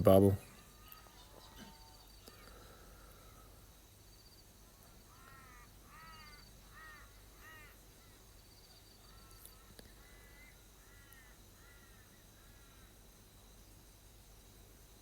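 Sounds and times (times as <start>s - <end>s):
faint high insect-like tone: 0.0s - 15.0s
crow cawing: 5.0s - 8.2s, 9.0s - 12.9s.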